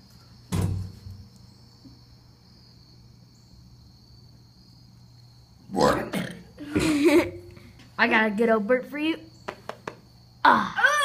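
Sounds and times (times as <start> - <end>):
high-pitched insect trill: 0.0 - 7.7, 8.8 - 11.0
brief thump: 0.5 - 1.2.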